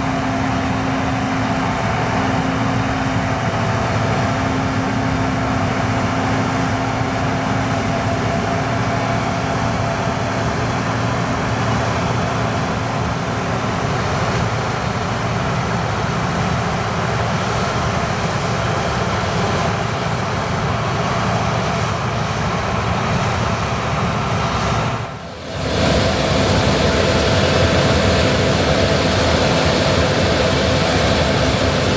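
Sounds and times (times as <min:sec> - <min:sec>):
combine harvester running: 0:00.0 - 0:31.9
steady low tone: 0:25.2 - 0:31.9.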